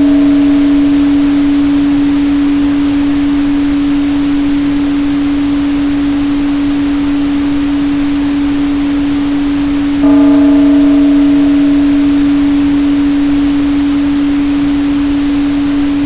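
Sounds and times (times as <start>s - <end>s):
ringing tone with overtones: 0.0s - 5.4s, 10.0s - 16.0s
steady sine tone: 0.0s - 16.0s.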